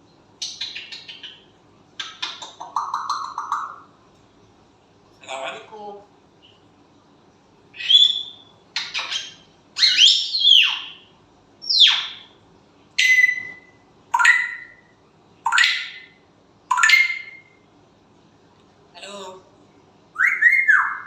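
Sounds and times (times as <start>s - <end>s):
parrot calling: 0.4s - 3.9s, 7.8s - 12.4s, 13.0s - 17.6s, 20.2s - 21.0s.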